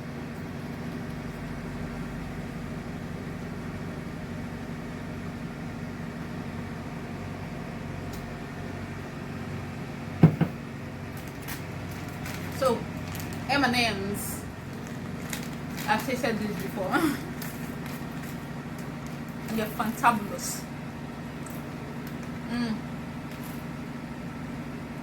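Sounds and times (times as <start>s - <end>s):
low machine hum: 0.0s - 25.0s
sharp knock: 10.2s - 10.6s.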